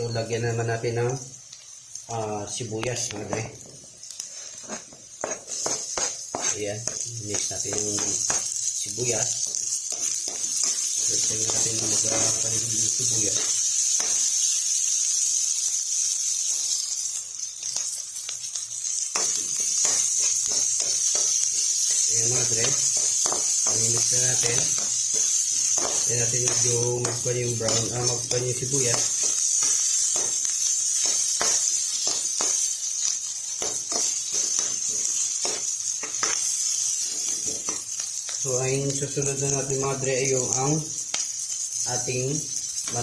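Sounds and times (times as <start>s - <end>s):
onion sizzling in hot oil: 0.0s - 43.0s
spatula scraping pan: 4.2s - 8.8s, 9.4s - 14.5s, 19.1s - 38.2s.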